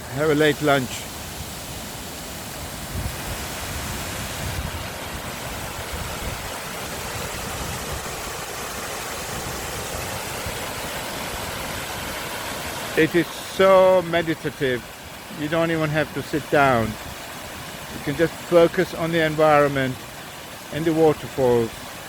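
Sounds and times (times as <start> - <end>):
waterfall rushing: 0.0 - 22.0.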